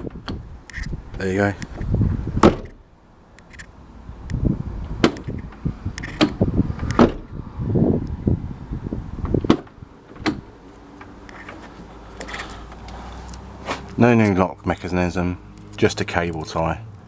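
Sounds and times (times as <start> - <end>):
car door handle and latch clicking: 0.0 - 7.4, 8.9 - 13.9
car door knocking shut: 1.8 - 2.8, 4.9 - 7.4, 9.2 - 10.5.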